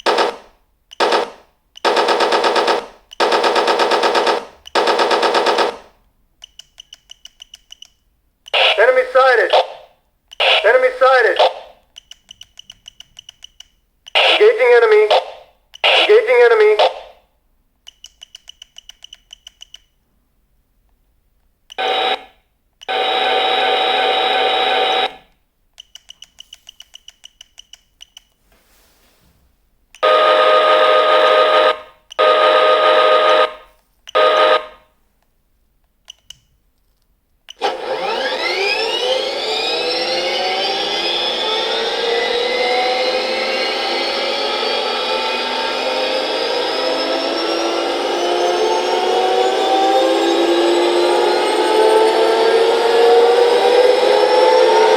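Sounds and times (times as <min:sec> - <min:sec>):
gas turbine whine: 0:22.9 - 0:25.3, 0:37.6 - 0:54.9
quick run of clicks: 0:25.8 - 0:28.4.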